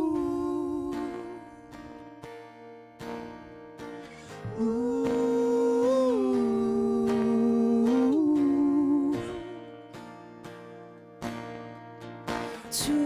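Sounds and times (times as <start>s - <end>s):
acoustic guitar strumming: 0.0s - 13.0s.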